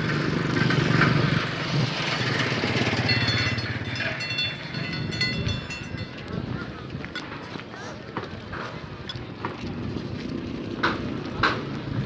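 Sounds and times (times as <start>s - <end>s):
small engine running: 0.0s - 4.9s.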